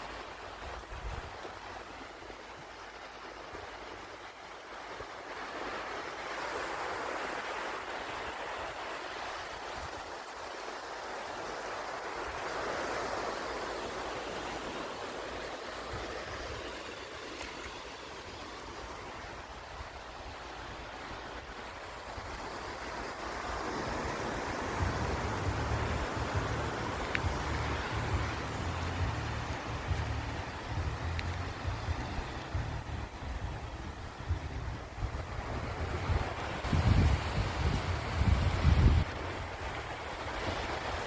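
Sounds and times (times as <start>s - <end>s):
sea waves washing ashore: 0.0s - 41.0s
wind rumbling on microphone: 12.3s - 41.0s.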